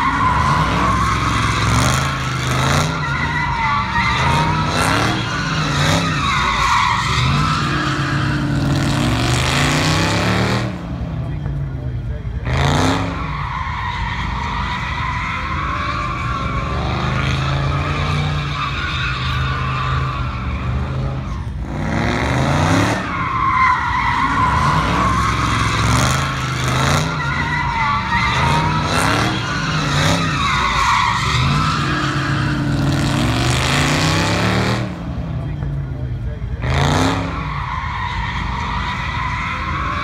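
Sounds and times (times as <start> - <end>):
tyres squealing: 0.0 - 10.7, 12.4 - 35.8, 36.6 - 40.0
car engine revving hard: 4.1 - 11.0, 12.4 - 13.3, 20.7 - 23.2, 24.1 - 35.5, 36.3 - 37.6.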